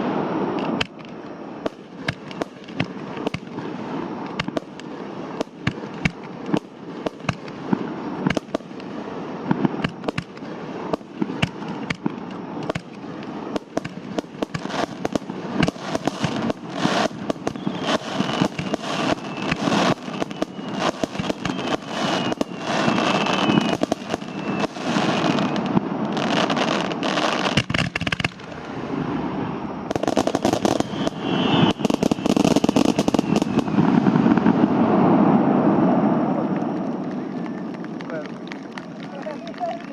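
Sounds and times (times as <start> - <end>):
fireworks bangs: 0.0 - 39.9
faint falling whistle: 17.5 - 25.6, 30.5 - 33.8.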